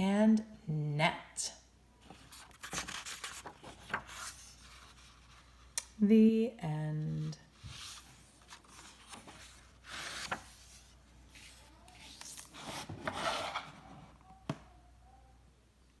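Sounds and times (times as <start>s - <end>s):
book pages rubbing and scraping: 2.0s - 5.6s, 7.1s - 14.1s.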